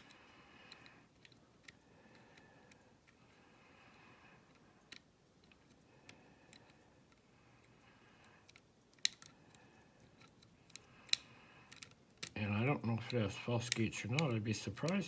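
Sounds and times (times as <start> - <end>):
lock pick clicking in lock: 8.5 - 9.3.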